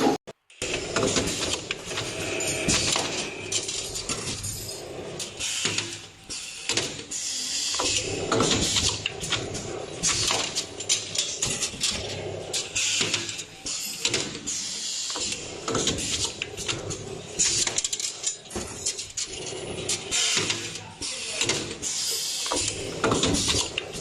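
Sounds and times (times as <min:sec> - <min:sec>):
hissing bursts: 0:01.3 - 0:06.7.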